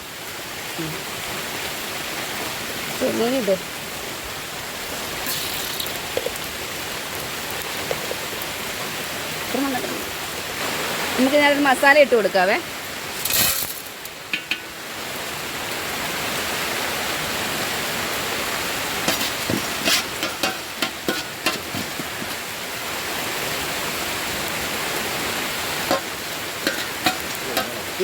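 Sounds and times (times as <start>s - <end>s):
heavy rain: 0.0s - 28.0s
spices sizzling in hot oil: 3.0s - 15.8s, 18.1s - 28.0s
spoon scraping and knocking pot: 13.2s - 14.8s, 19.0s - 22.4s, 25.9s - 27.8s.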